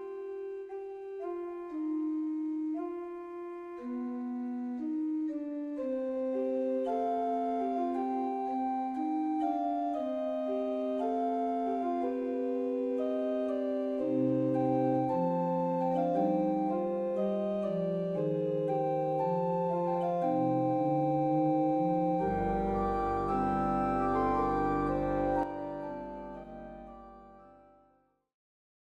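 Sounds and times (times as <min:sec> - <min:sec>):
slow organ-like keyboard chords: 0:00.0 - 0:27.9
bass line: 0:19.9 - 0:27.6.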